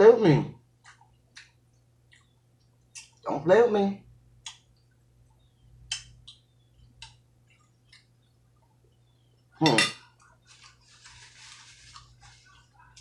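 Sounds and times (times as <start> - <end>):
cutlery clinking on a plate: 9.6 - 10.1.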